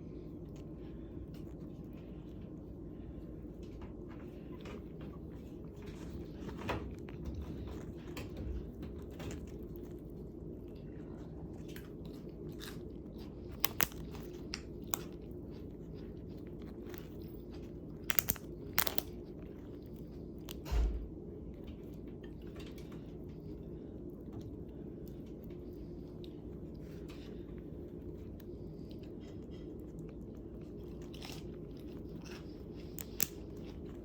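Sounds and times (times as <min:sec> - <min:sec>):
steady low hum: 0:00.0 - 0:34.0
crunching on fried chicken: 0:05.2 - 0:20.6, 0:24.5 - 0:34.0.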